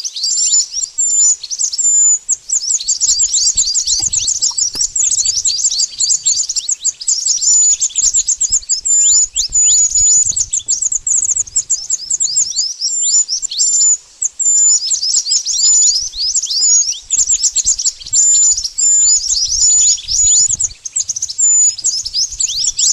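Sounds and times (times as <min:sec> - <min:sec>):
high bird chirps: 0:00.3 - 0:22.9.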